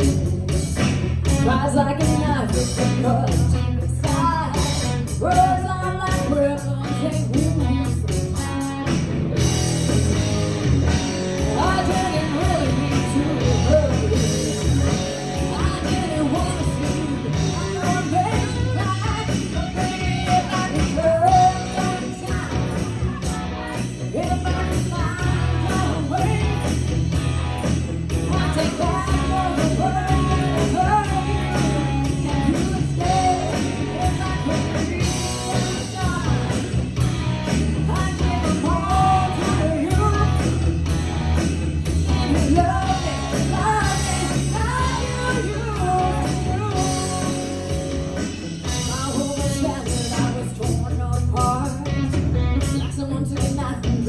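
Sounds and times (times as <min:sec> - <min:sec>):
live rock and roll band: 0:00.0 - 0:54.0
person singing: 0:11.4 - 0:26.9, 0:28.2 - 0:36.7, 0:37.8 - 0:40.6, 0:42.1 - 0:47.7, 0:48.8 - 0:54.0.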